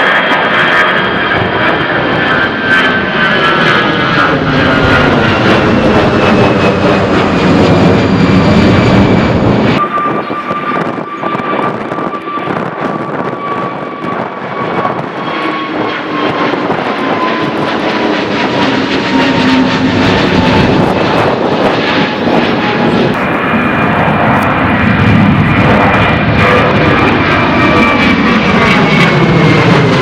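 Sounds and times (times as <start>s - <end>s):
high engine whine: 0.0s - 30.0s
jet engines roaring: 0.0s - 30.0s.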